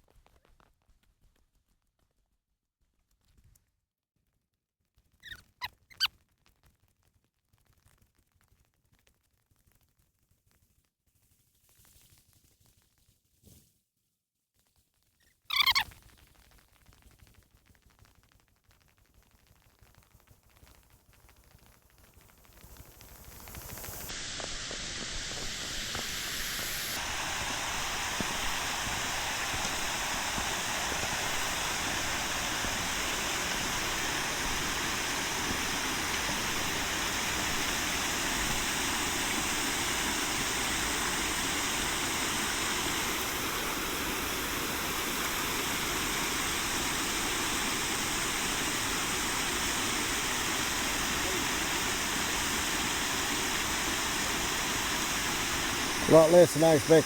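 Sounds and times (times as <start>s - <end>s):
waterfall rushing: 24.1s - 57.0s.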